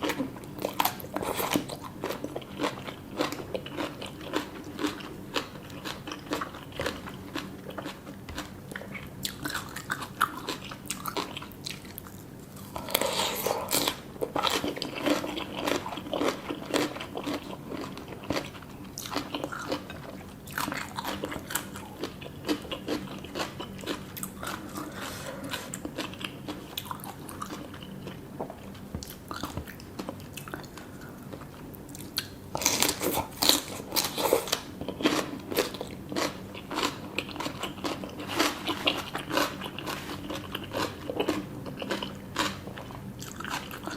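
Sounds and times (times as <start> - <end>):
chewing and crunching food: 0.0 - 43.9.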